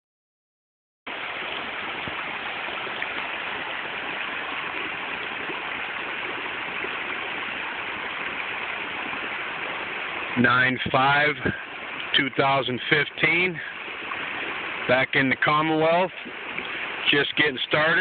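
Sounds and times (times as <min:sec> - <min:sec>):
flowing water rushing: 0:01.1 - 0:18.0.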